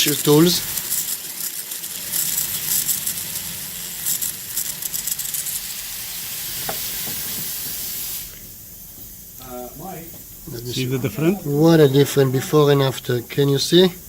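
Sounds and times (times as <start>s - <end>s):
abrasive tool grinding metal: 0.0s - 7.6s
faint motor hum: 0.0s - 14.0s.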